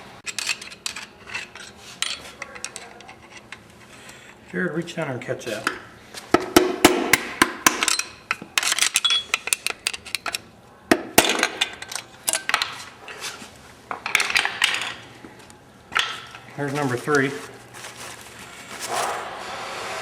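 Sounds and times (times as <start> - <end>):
metal engine parts clinking: 7.8 - 10.4, 11.2 - 12.9, 13.9 - 15.1.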